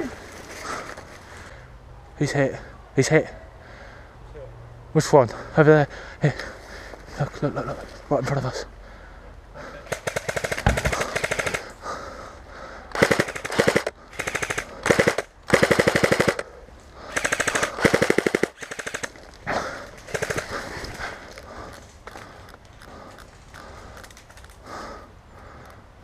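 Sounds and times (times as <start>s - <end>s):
airsoft guns firing bursts: 9.8s - 11.7s, 12.9s - 16.5s, 17.1s - 19.2s, 20.0s - 21.1s.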